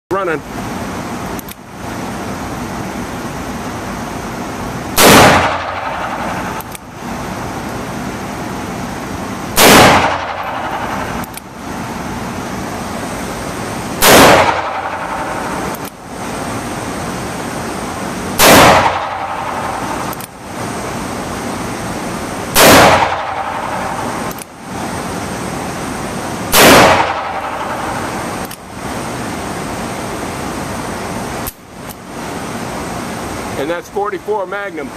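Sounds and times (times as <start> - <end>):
steady background hum: 0.1 - 34.9
revolver gunshots: 4.9 - 6.9, 9.2 - 11.8, 13.9 - 16.1, 18.2 - 20.5, 22.5 - 24.8, 26.5 - 28.5.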